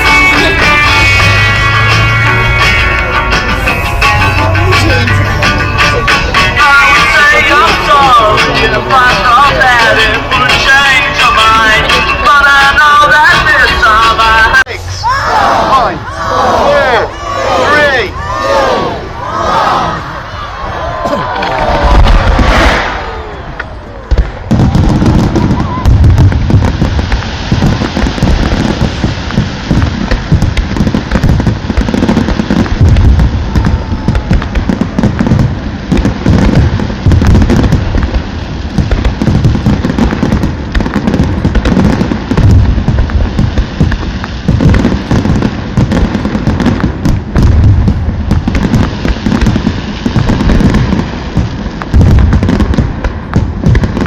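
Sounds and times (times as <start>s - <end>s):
fireworks booming and crackling: 0.0s - 14.8s, 21.0s - 54.0s.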